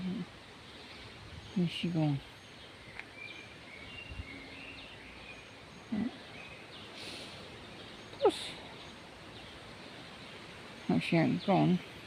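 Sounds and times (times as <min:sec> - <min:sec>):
outdoor background noise: 0:00.0 - 0:12.0
small birds chirping: 0:00.0 - 0:12.0
short hiss: 0:07.0 - 0:07.5.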